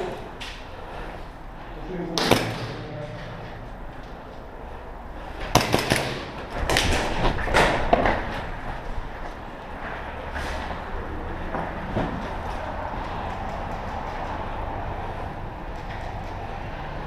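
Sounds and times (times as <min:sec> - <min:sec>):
sharp knocks and clacks: 0:05.4 - 0:08.5.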